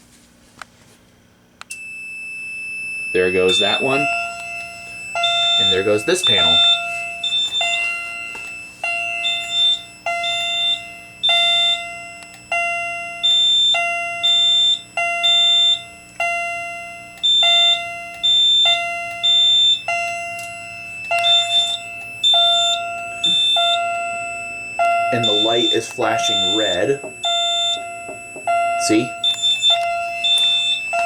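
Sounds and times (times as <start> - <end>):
fire alarm chime striking: 1.7 - 31.0
high-pitched electronic beep: 3.2 - 11.7, 18.7 - 31.0.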